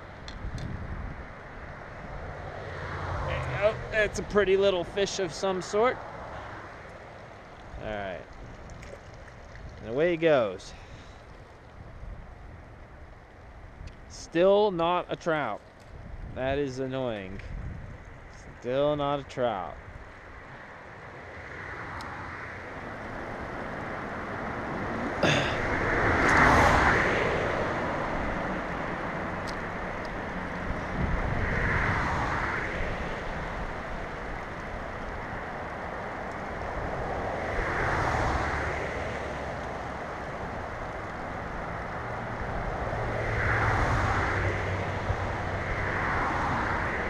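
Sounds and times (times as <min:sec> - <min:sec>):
wind on microphone: 0:00.0 - 0:02.3, 0:15.9 - 0:16.6, 0:17.3 - 0:18.6, 0:30.7 - 0:34.1
stream water flowing: 0:05.0 - 0:13.4.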